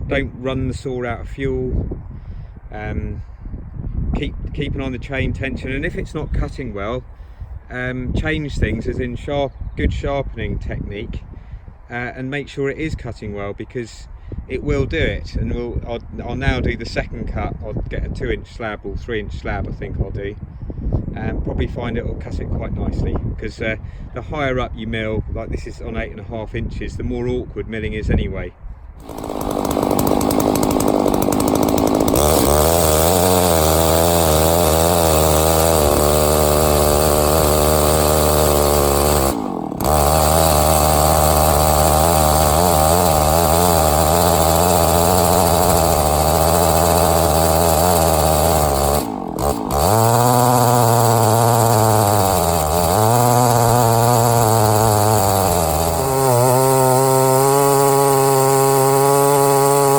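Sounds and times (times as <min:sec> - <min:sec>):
chainsaw cutting through log: 0:29.0 - 0:59.9.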